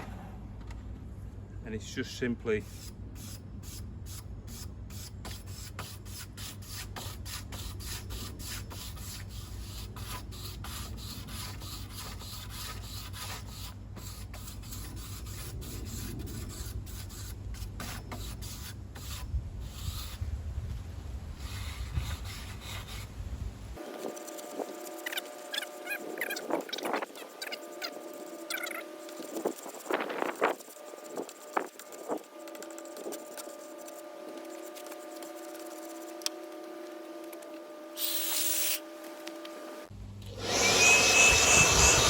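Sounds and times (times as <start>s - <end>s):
wire brush scrubbing wood: 2.6s - 20.2s, 23.8s - 38.7s.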